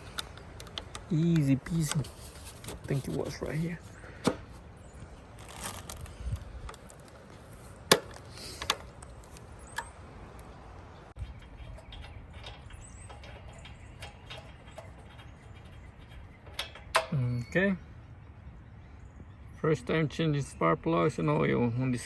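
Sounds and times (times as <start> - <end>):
tools and parts clicking: 0.0 - 2.9, 7.9 - 10.6, 11.2 - 17.2.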